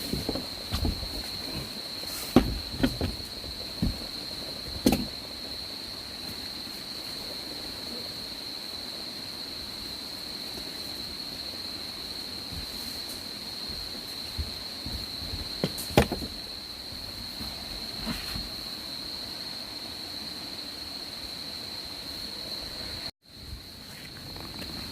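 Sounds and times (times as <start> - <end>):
short knocks and thumps: 0.0 - 5.2, 13.7 - 18.5
insects trilling: 0.0 - 24.9.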